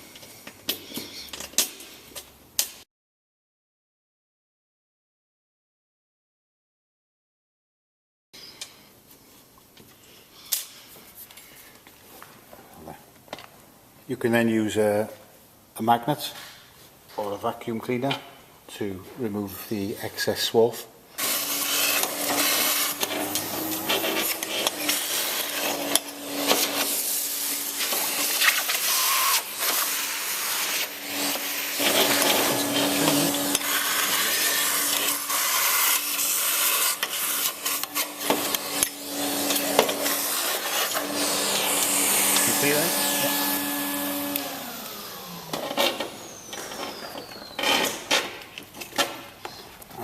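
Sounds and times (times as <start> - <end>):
vacuum cleaner winding down: 21.2 - 47.6.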